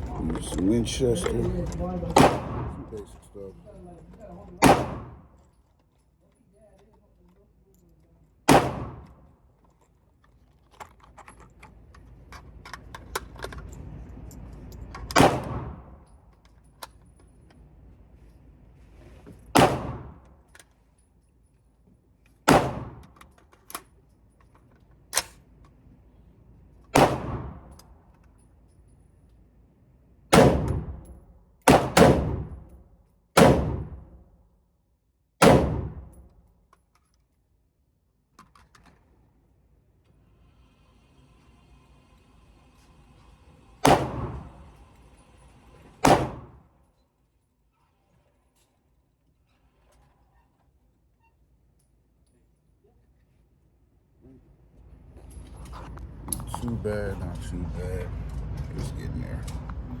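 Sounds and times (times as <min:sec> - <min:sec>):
gunshots with ringing echo: 0:02.1 - 0:03.2, 0:04.6 - 0:05.3, 0:08.5 - 0:09.1, 0:15.1 - 0:16.0, 0:19.6 - 0:20.2, 0:22.5 - 0:23.0, 0:27.0 - 0:27.8, 0:30.3 - 0:32.8, 0:33.4 - 0:34.2, 0:35.4 - 0:36.2, 0:43.8 - 0:44.6, 0:46.0 - 0:46.6.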